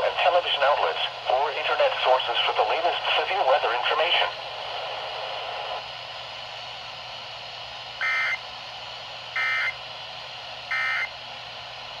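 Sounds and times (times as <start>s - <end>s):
radio hiss: 0.0s - 5.8s
two-tone digital data warble: 8.0s - 8.4s, 9.4s - 9.8s, 10.7s - 11.1s.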